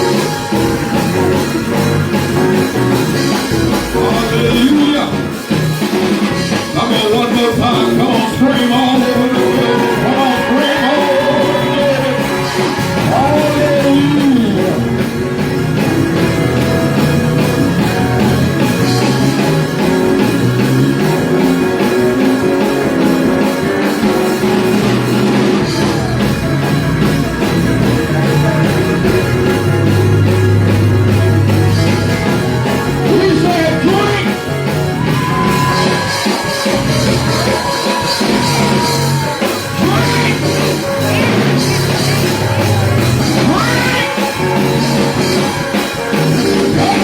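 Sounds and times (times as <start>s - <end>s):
rock band with drums: 0.0s - 47.0s
person singing: 6.7s - 15.0s, 43.2s - 45.2s.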